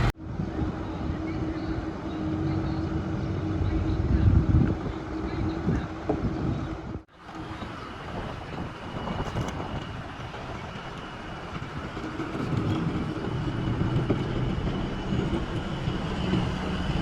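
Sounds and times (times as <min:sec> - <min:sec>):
heavy machinery engine rumble: 0:00.0 - 0:17.0.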